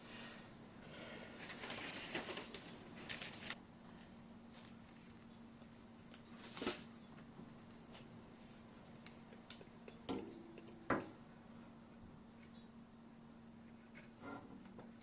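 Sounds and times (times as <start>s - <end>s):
low steady hum: 0.0s - 15.0s
rustling of computer parts: 1.4s - 9.8s.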